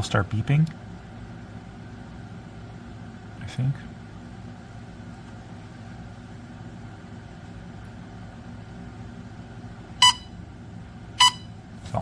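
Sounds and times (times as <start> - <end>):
low steady hum: 0.0 - 12.0
gas detector beep: 10.0 - 10.4, 11.2 - 11.6.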